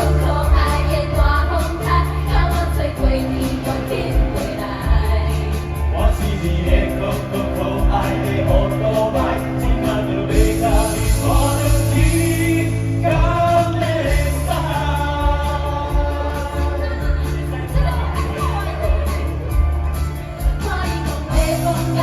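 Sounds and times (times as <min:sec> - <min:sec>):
backing band: 0:00.0 - 0:22.0
drums: 0:00.0 - 0:22.0
held bass: 0:00.0 - 0:22.0
person singing: 0:20.4 - 0:22.0.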